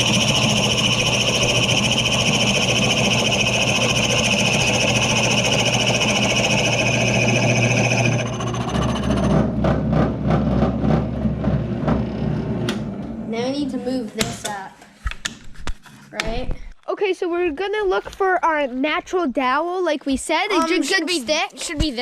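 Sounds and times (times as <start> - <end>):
power saw whining: 0.0 - 9.5.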